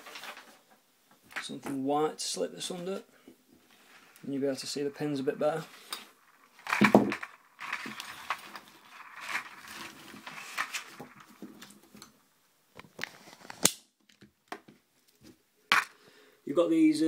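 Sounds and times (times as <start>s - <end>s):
paper rustling and scraping: 0.0s - 0.6s, 5.6s - 11.8s.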